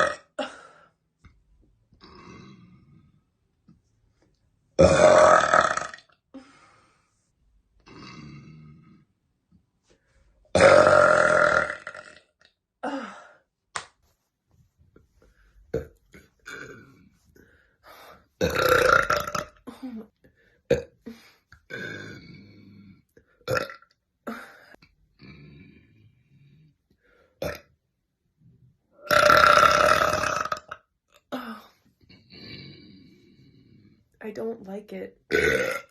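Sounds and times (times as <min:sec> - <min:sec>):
woman burping: 0:00.0 - 0:00.8, 0:02.0 - 0:02.7, 0:04.8 - 0:06.2, 0:07.8 - 0:08.5, 0:10.5 - 0:13.0, 0:15.7 - 0:17.0, 0:18.4 - 0:20.1, 0:23.4 - 0:25.3, 0:29.0 - 0:31.7, 0:35.3 - 0:35.9.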